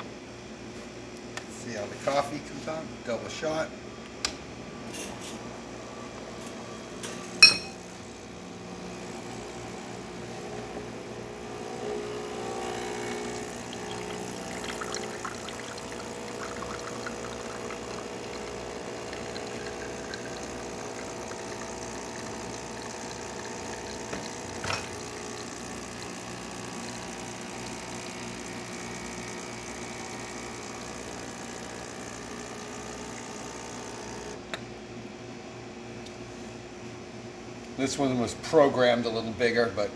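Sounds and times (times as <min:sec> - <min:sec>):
espresso machine pump humming: 0:04.7 - 0:34.8
espresso pouring into cup: 0:07.0 - 0:34.4.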